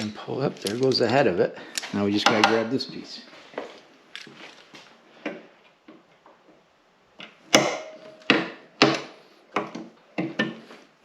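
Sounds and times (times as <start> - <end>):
hand tools knocking and clanking: 2.2 - 2.8, 7.5 - 10.7.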